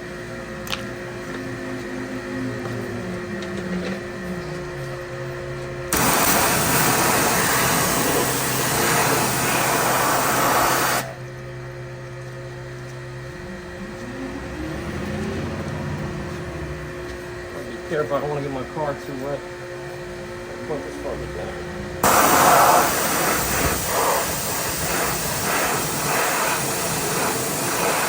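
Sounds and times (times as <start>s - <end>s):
water spray hissing: 5.9s - 11.1s, 22.0s - 28.0s
pressure washer motor hum: 5.9s - 11.4s, 20.4s - 28.0s.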